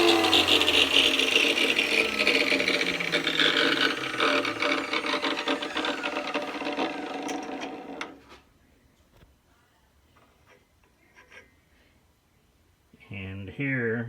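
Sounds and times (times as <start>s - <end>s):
cut-off saw winding down: 0.0s - 8.2s.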